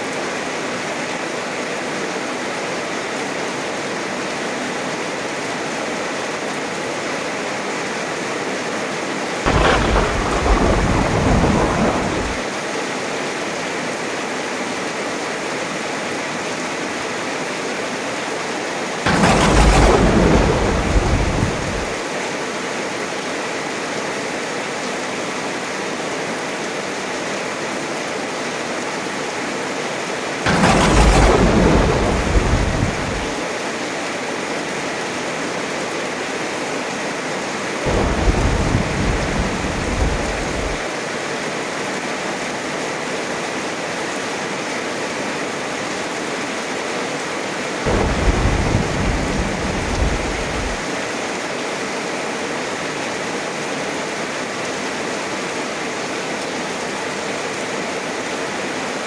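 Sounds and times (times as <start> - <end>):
thunder cracking and rumbling: 9.5 - 12.5, 19.1 - 22.1, 30.5 - 33.5, 37.9 - 40.9, 47.9 - 50.9
heavy rain falling: 9.5 - 12.6, 18.6 - 22.4, 30.2 - 34.0, 37.7 - 41.2, 47.8 - 51.2.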